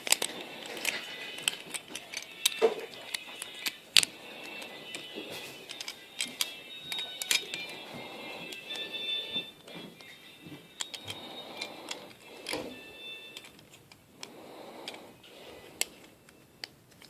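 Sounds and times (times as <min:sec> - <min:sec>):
toy car parts clicking: 0:00.0 - 0:17.0.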